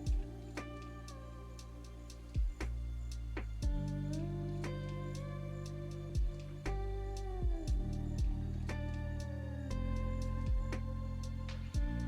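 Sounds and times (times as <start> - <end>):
sliding sustained music tones: 0.0 - 12.0
low thumps: 2.4 - 12.0.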